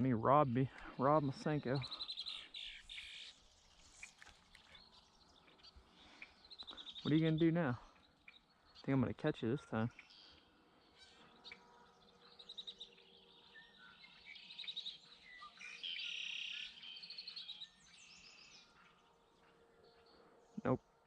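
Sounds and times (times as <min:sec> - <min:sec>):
songbirds singing and chirping: 0:00.0 - 0:21.0.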